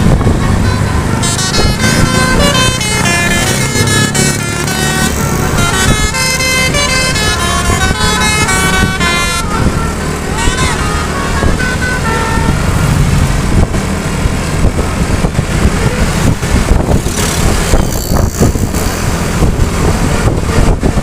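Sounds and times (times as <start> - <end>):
bus horn playing a tune: 0.0 - 13.6
heavy bus engine rumble: 0.0 - 21.0.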